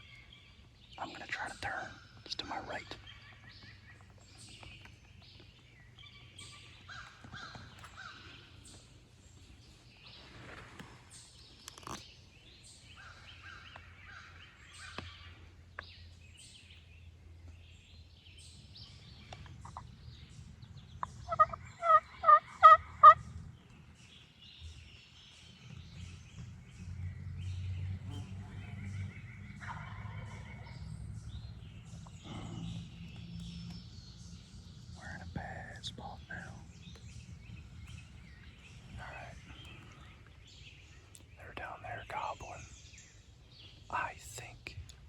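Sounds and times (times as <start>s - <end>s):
turkey gobbling: 21.0s - 23.3s, 29.6s - 30.8s.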